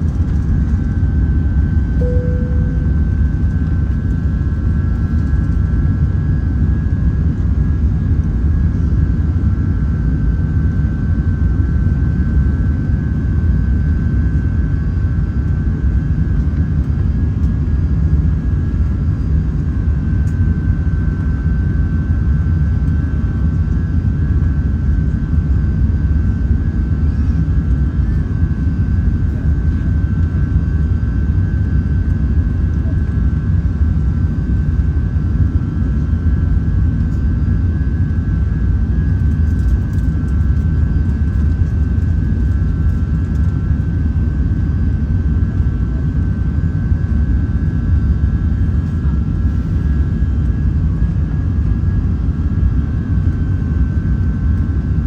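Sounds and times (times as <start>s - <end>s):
jet engine roar in cabin: 0.0s - 55.0s
thin high tone: 2.0s - 3.5s.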